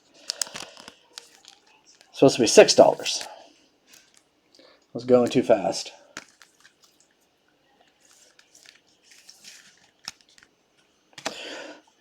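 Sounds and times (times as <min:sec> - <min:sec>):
cards and packaging rustling: 0:00.1 - 0:04.3, 0:06.1 - 0:07.2, 0:07.8 - 0:11.4.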